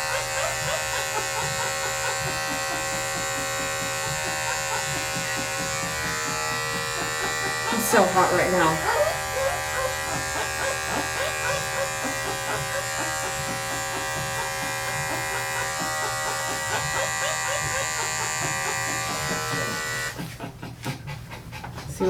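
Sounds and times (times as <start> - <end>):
electric clippers humming: 0.0 - 20.4.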